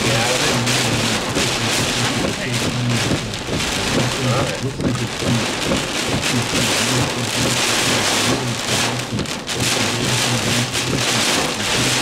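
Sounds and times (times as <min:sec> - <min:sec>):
heavy rain on a car: 0:00.0 - 0:12.0.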